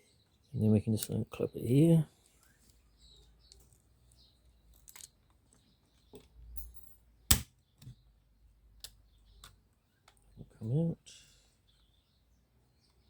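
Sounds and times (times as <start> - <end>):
loud sharp plastic snap: 7.3 - 8.0.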